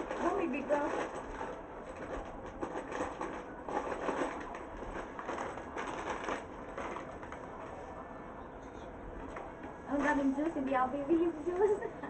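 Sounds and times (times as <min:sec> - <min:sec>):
packaging rustling: 0:00.0 - 0:07.4.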